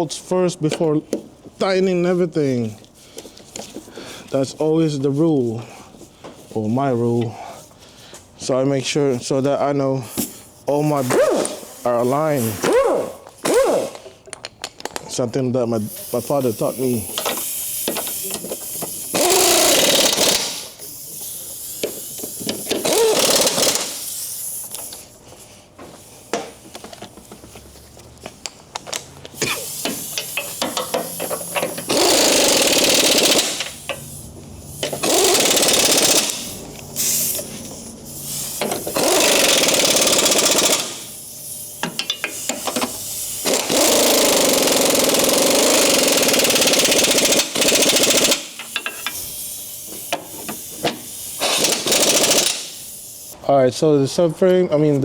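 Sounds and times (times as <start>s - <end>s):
impact wrench running: 10.1s - 14.4s, 15.7s - 25.1s, 28.7s - 53.4s.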